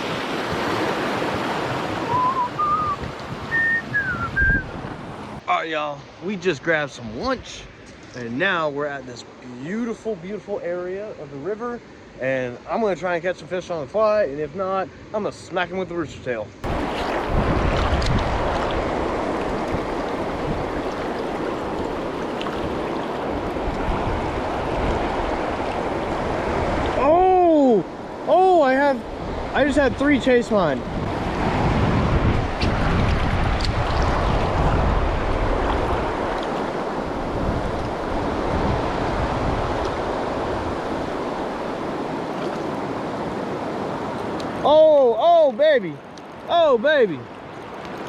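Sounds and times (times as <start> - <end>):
wind buffeting microphone: 0.0 - 5.4, 16.6 - 28.2, 29.0 - 44.4
fast river rushing: 0.0 - 6.2, 16.6 - 48.0.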